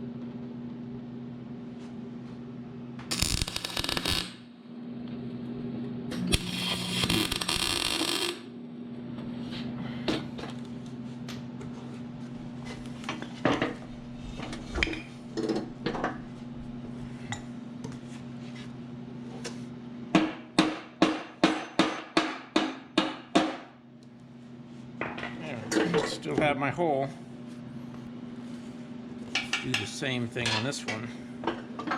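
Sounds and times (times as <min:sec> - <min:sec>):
steady electrical hum: 0:00.0 - 0:21.9
welding arc sizzling: 0:03.1 - 0:04.5, 0:06.1 - 0:08.5.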